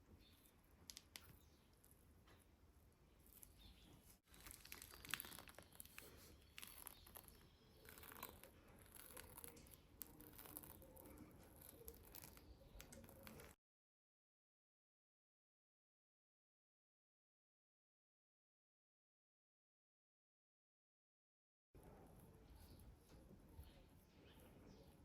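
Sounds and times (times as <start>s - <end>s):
crinkling: 3.2s - 13.6s.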